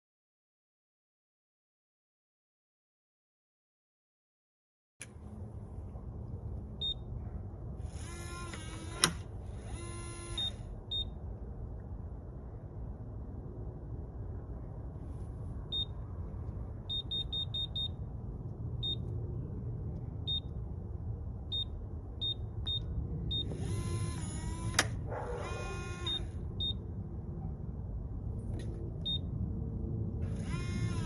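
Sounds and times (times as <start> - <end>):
low rumble: 9.2 - 25.2, 25.8 - 31.0
keypad beeps: 16.9 - 18.0, 18.8 - 19.0, 20.3 - 20.5, 21.5 - 23.5, 26.0 - 26.8
lock click: 24.7 - 25.0.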